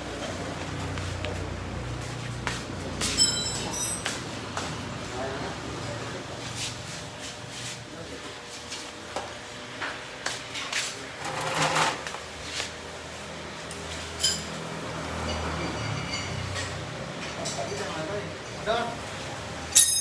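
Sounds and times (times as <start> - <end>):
metal tools clinking and knocking: 3.1 - 4.2, 19.7 - 20.0
ringing metal clink: 3.2 - 4.1, 19.7 - 20.0.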